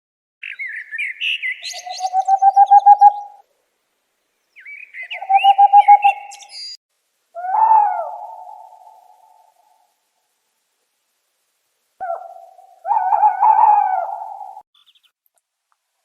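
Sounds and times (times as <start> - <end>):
small birds twittering: 0.4 - 3.4, 4.3 - 6.8, 12.0 - 15.2
owl hooting: 1.5 - 3.4, 4.6 - 6.6, 7.4 - 9.9, 12.0 - 14.6.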